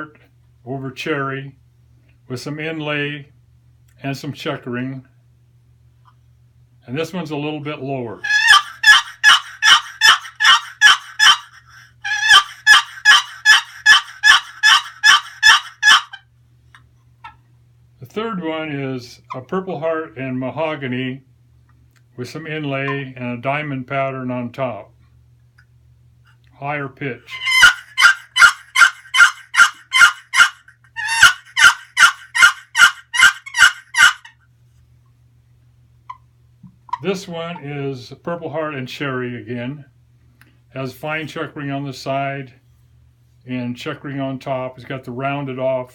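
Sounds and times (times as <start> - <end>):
turkey box call yelps: 8.2 - 16.3, 27.3 - 34.4.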